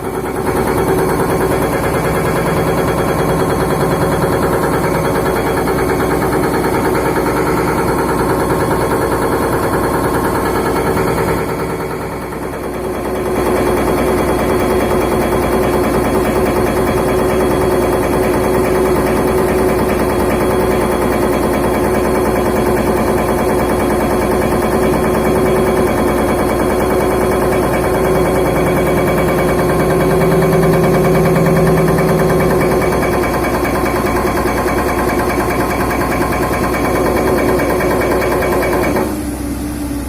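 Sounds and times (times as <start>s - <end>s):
excavator engine running hard: 0.0s - 40.0s.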